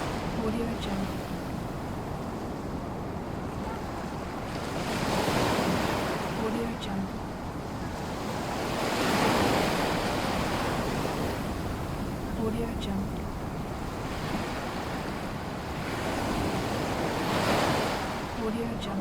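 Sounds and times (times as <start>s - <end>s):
waves breaking on shore: 0.0s - 19.0s.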